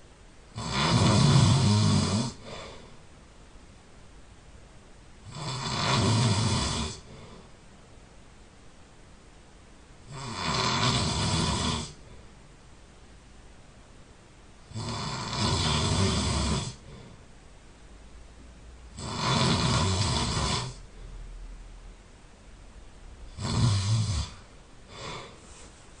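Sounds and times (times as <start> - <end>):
person snoring: 0.5 - 2.8, 5.3 - 7.4, 10.1 - 12.1, 14.7 - 17.2, 18.9 - 20.9, 23.3 - 25.5
quiet breathing: 1.2 - 3.2, 6.4 - 8.0, 11.4 - 12.6, 15.6 - 17.4, 19.8 - 21.8, 23.2 - 26.0.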